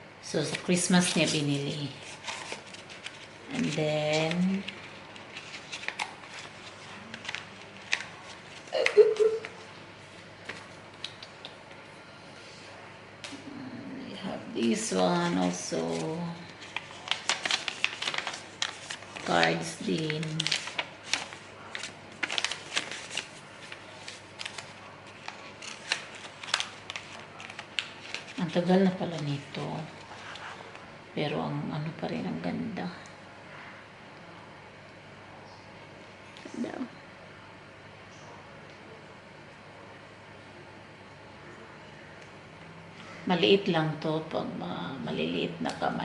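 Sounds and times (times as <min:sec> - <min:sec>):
paper cards rustling and clicking: 0:00.5 - 0:09.6, 0:15.7 - 0:30.8.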